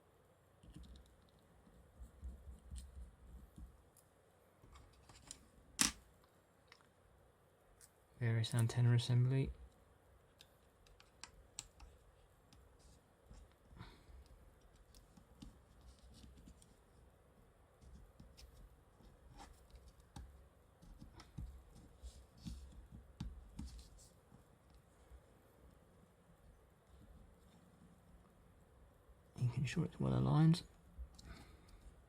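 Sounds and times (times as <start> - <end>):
small clicks and light scratching: 0.6 - 7.0, 9.6 - 17.0, 17.8 - 25.8.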